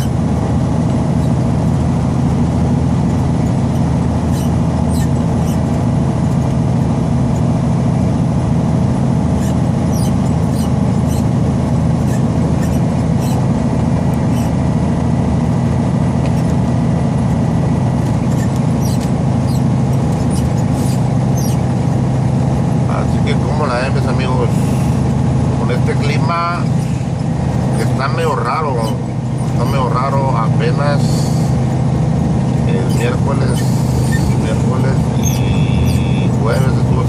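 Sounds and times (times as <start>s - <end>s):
short high squeaks and ticks: 0.0s - 0.2s, 3.7s - 6.5s, 9.4s - 11.4s, 12.0s - 13.5s, 14.1s - 14.6s, 18.0s - 21.7s, 26.6s - 29.9s, 32.7s - 36.7s
diesel engine drone: 0.0s - 37.0s
road noise: 0.0s - 37.0s.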